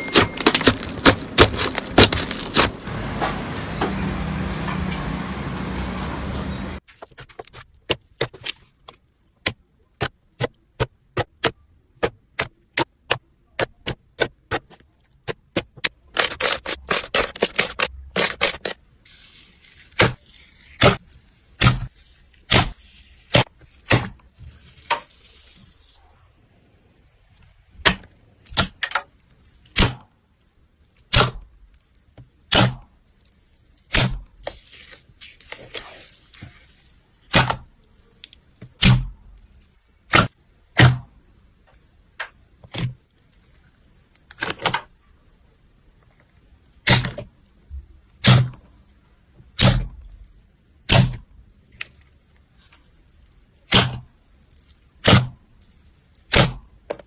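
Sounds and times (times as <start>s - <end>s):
slime air pops and crackling: 55.0s - 55.4s, 56.3s - 56.6s.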